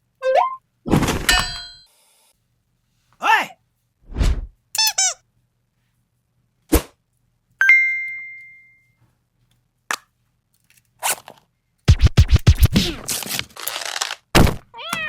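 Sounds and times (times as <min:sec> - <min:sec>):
bright ringing ding: 0:07.6 - 0:09.0
cartoon thumps: 0:11.9 - 0:13.1
scratchy record scratch noise: 0:11.9 - 0:14.1.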